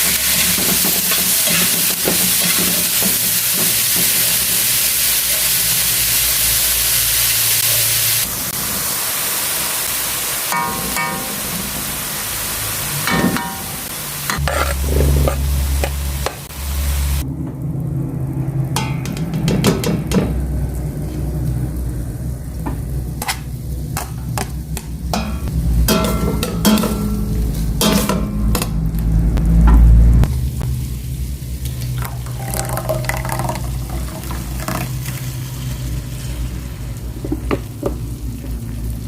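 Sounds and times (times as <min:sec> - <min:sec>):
meat frying in oil: 0:00.0 - 0:39.0
spatula scraping a pan: 0:14.3 - 0:16.0.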